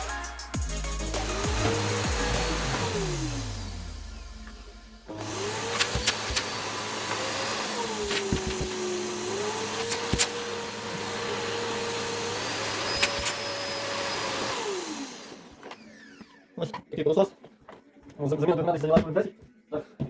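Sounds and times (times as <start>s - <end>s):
vacuum cleaner whining: 1.1s - 16.8s.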